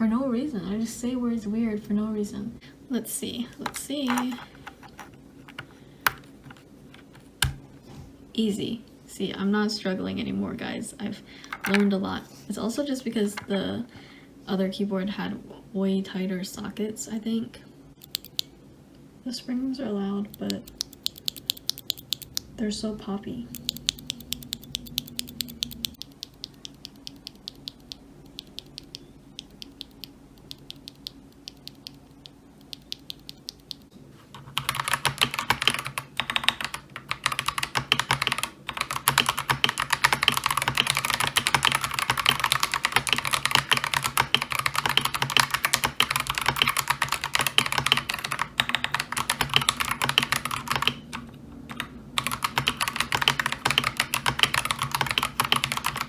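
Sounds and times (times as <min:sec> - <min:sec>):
fast typing on keyboard: 0:20.4 - 0:22.4, 0:23.6 - 0:56.0.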